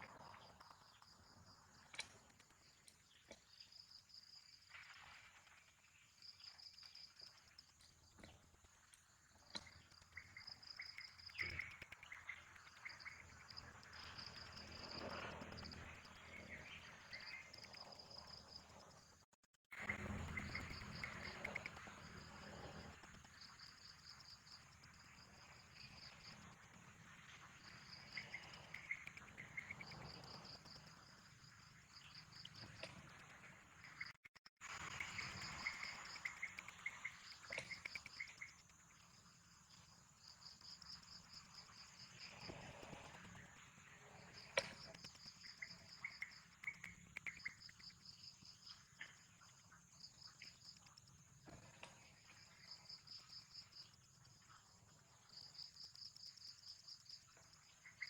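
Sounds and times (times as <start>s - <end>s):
insects chirping: 19.8s - 33.1s, 33.8s - 58.0s.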